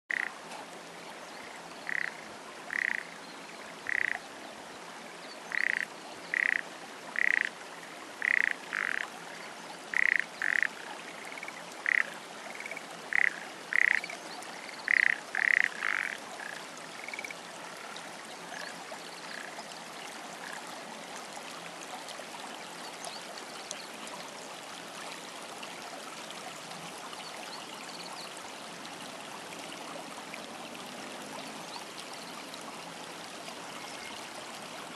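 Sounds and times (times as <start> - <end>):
frog croaking: 0.1 - 0.3, 1.4 - 3.2, 3.9 - 4.2, 5.5 - 6.6, 7.2 - 7.5, 8.2 - 9.0, 9.9 - 17.9.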